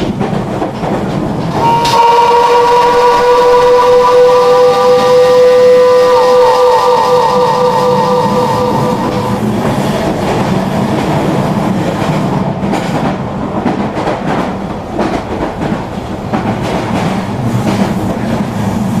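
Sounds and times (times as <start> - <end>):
train rumbling on track: 0.0 - 19.0
whistle-like tone: 1.6 - 9.5.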